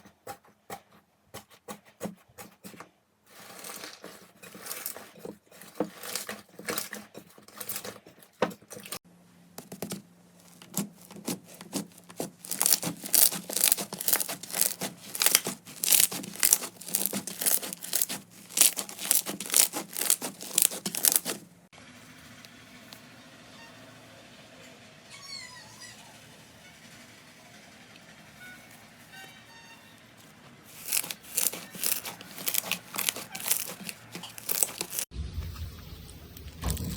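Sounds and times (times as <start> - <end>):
slime crackling and popping: 9.8 - 21.4, 30.7 - 35.1.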